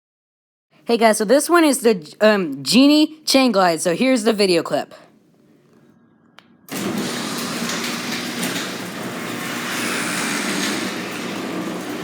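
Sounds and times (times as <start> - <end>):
garage door opener motor hum: 5.2 - 12.0.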